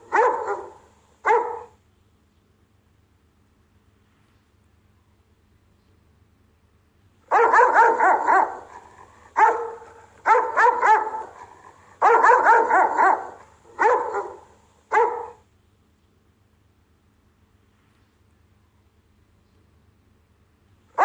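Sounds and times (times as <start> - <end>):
dog barking: 0.0 - 1.8, 7.3 - 15.4.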